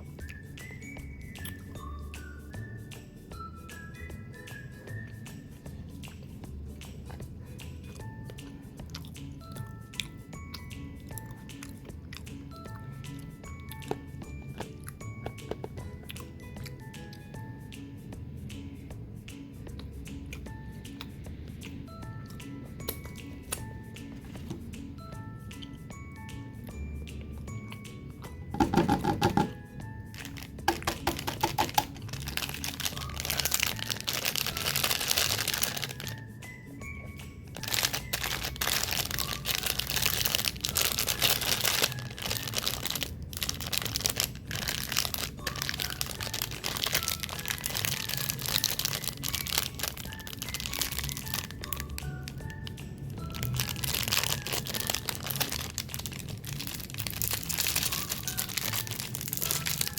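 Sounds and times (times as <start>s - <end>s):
soft background music: 0.0s - 59.9s
plastic packaging crinkling: 28.6s - 36.3s, 37.5s - 59.9s.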